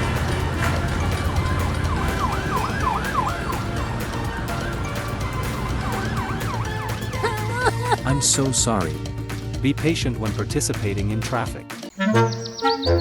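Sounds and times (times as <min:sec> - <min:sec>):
background music: 0:00.0 - 0:13.0
siren yelping: 0:01.5 - 0:03.8, 0:05.4 - 0:07.8, 0:11.9 - 0:13.0.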